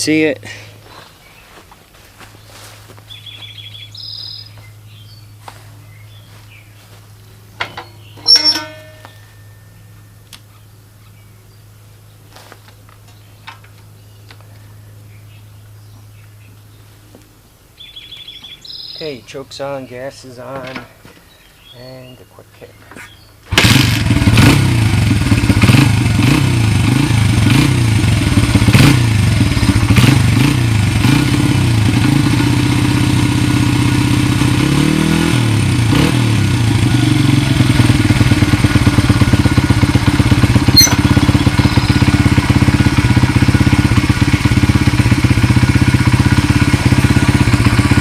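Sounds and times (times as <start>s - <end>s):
motorcycle engine running: 3.1s - 9.5s, 23.5s - 48.0s.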